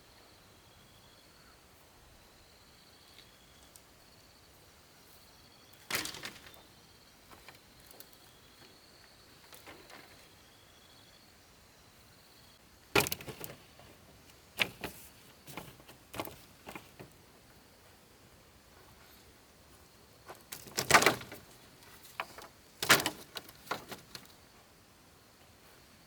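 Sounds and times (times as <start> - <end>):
sharp knocks and clatters: 13.0 - 13.6.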